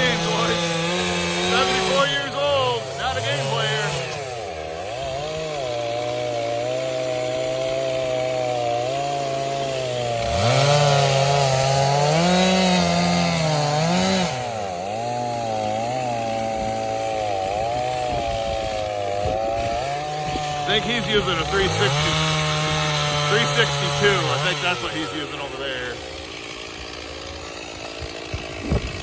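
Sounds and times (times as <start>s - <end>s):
chainsaw cutting under load: 0.0s - 29.0s
chainsaw revving: 0.0s - 29.0s.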